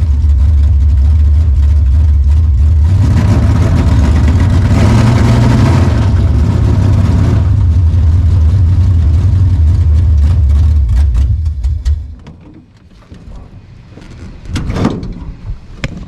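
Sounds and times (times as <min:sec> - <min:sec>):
engine running loud: 0:00.0 - 0:12.2.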